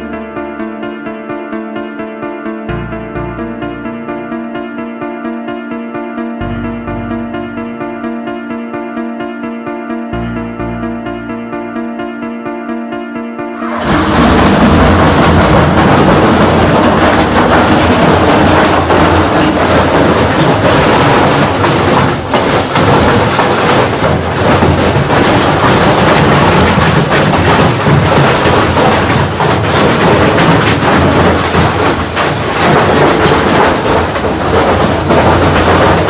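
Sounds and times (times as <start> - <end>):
washing machine rattling and banging: 13.6 - 36.0.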